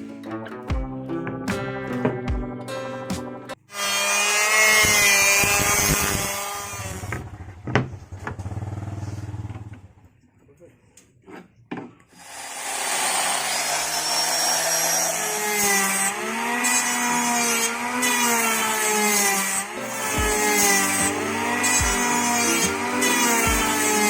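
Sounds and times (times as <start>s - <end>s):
power tool cutting wood: 3.7s - 7.5s, 12.2s - 24.0s.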